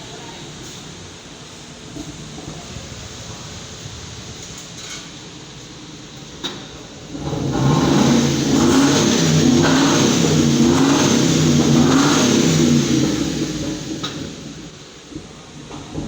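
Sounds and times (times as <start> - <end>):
engine revving: 7.1 - 14.8.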